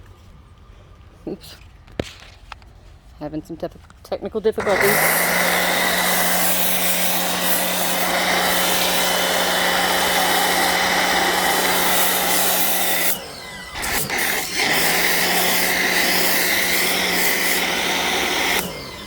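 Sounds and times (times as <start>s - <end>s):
pressure washer motor hum: 4.6s - 19.0s.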